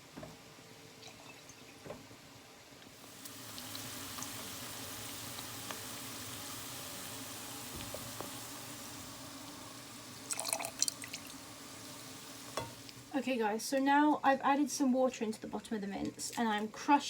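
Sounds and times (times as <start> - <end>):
meat sizzling in a frying pan: 2.9 - 13.2.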